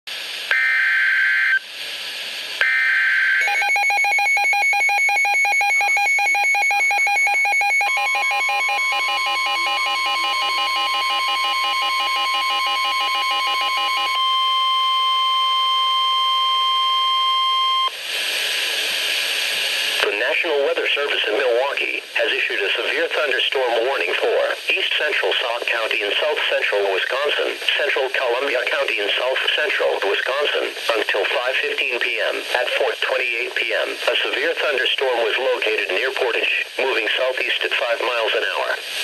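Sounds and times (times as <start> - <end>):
static-like noise burst: 0.1 - 3.4, 17.9 - 39.0
steady warning alarm tone: 0.5 - 1.6, 2.6 - 17.9
fast pulsing beep: 3.4 - 14.2.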